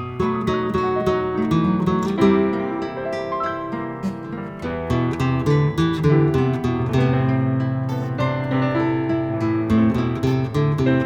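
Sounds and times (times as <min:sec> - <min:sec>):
plucked acoustic guitar music: 0:00.0 - 0:11.0.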